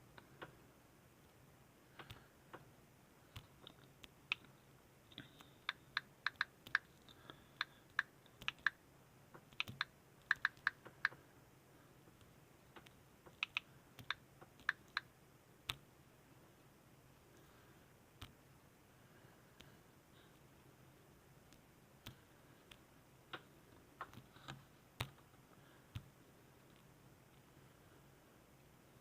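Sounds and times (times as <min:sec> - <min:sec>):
keyboard typing: 0:03.3 - 0:11.3, 0:12.1 - 0:15.9.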